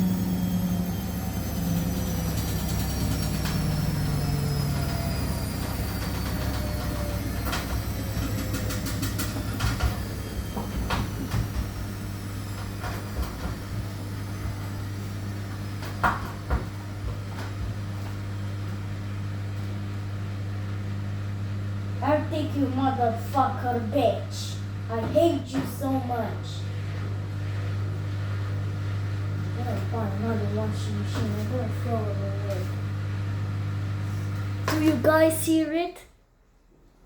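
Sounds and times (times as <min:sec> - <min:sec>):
washing machine motor whine: 0:00.0 - 0:35.9
washing machine humming: 0:00.0 - 0:36.4
washing machine knocks and clunks: 0:06.7 - 0:14.6.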